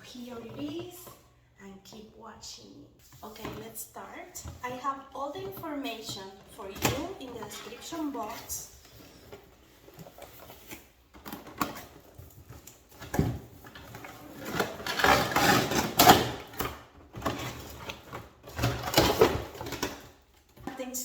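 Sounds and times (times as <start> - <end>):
packaging rustling and scraping: 5.4 - 20.6.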